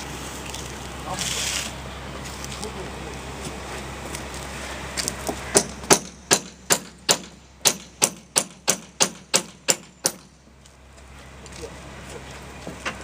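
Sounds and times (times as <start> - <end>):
sharp knocks: 5.5 - 10.4.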